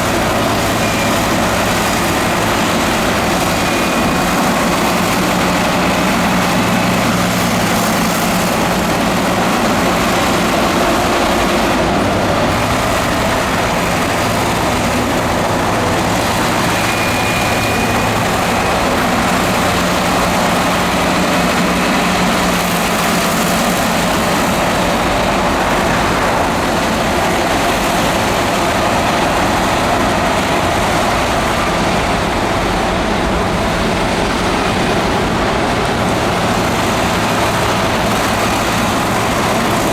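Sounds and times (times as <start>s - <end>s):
heavy diesel machinery engine drone: 0.0s - 39.9s.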